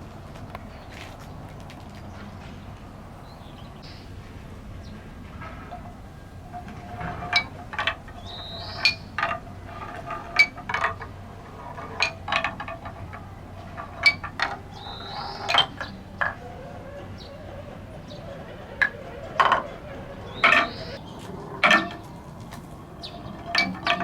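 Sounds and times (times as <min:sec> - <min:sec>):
balls rolling rumble: 0:00.0 - 0:24.0
wooden balls knocking on steps: 0:05.6 - 0:16.5, 0:18.6 - 0:24.0.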